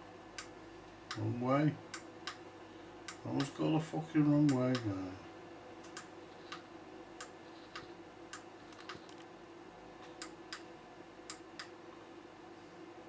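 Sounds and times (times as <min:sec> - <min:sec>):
faint steady hum: 0:00.0 - 0:13.0
small sharp clicks: 0:05.8 - 0:06.6, 0:11.3 - 0:11.8.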